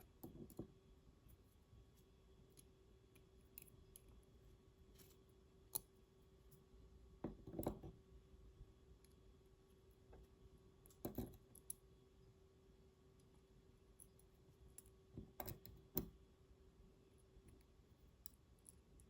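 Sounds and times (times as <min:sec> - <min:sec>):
small metal lock parts clicking: 0:10.9 - 0:11.8, 0:14.0 - 0:16.1.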